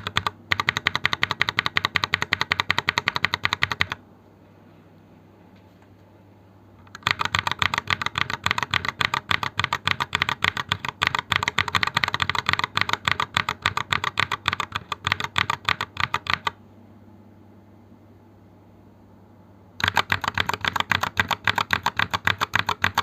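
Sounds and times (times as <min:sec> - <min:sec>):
fast typing on a mechanical keyboard: 0:00.0 - 0:04.0, 0:06.8 - 0:16.6, 0:19.8 - 0:23.0.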